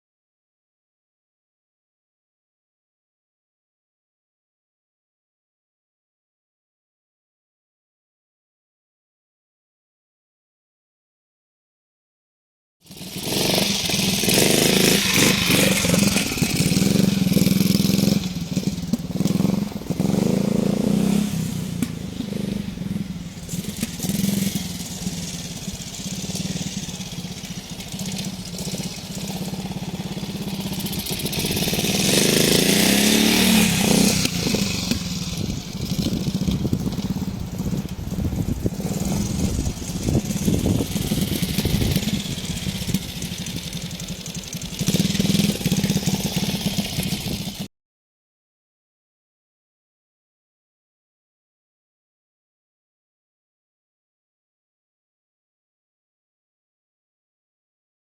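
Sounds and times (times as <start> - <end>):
motorcycle engine revving: 12.8 - 47.7.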